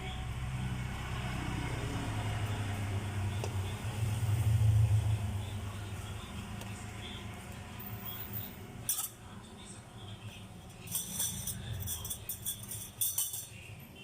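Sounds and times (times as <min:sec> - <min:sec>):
metal utensils and dishes clinking: 0:08.0 - 0:09.4, 0:10.2 - 0:14.0.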